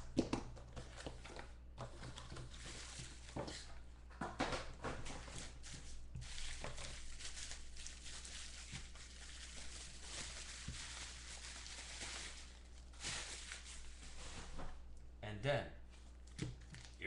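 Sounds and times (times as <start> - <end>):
packaging tearing and crinkling: 6.2 - 13.9.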